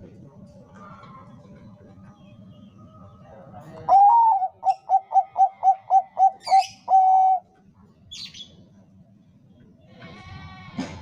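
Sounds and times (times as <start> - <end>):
dove cooing: 3.9 - 7.5.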